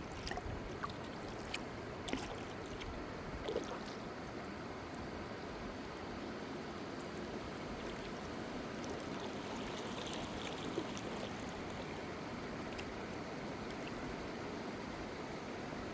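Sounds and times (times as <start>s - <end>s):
water drips and splashes: 0.0s - 4.5s.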